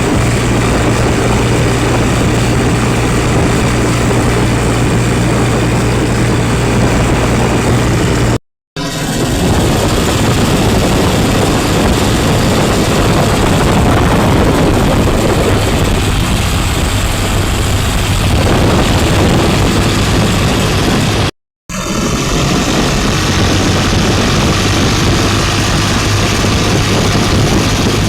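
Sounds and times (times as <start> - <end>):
diesel engine running loudly: 0.0 - 28.0.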